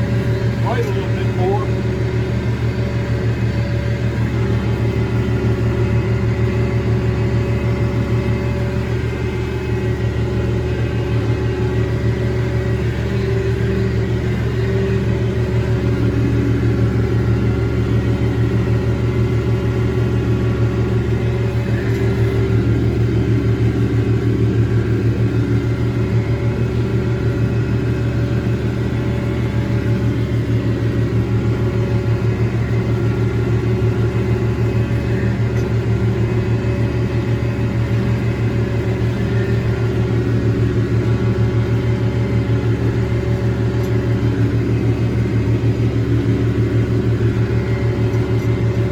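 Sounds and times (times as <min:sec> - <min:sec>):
tractor diesel engine running: 0:00.0 - 0:48.9.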